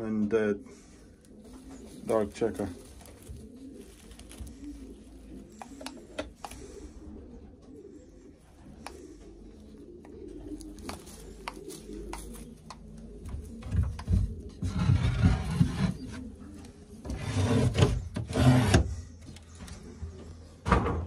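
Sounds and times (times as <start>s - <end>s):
pigeons cooing softly: 0.0s - 21.0s
loud rustling and rubbing: 14.3s - 16.4s, 17.0s - 19.0s.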